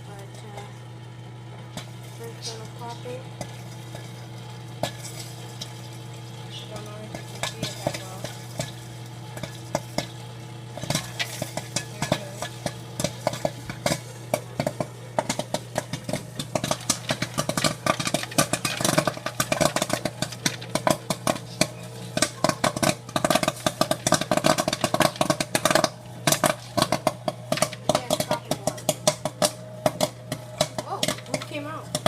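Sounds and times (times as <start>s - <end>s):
machine humming: 0.0s - 32.0s
popcorn popping: 0.0s - 32.0s.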